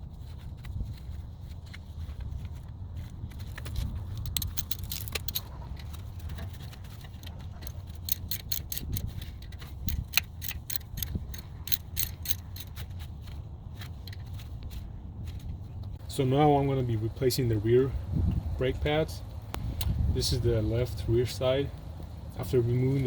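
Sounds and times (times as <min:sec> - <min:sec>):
low steady rumble: 0:00.0 - 0:22.9
ratchet wrench clicking: 0:03.6 - 0:05.5, 0:07.0 - 0:13.0.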